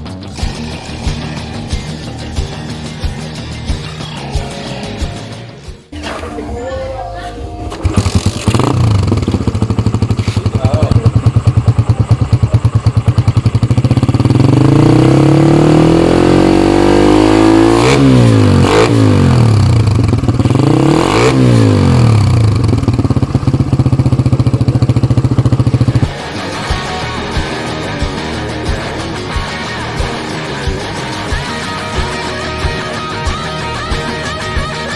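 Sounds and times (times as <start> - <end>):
motorcycle engine revving: 5.8 - 33.7.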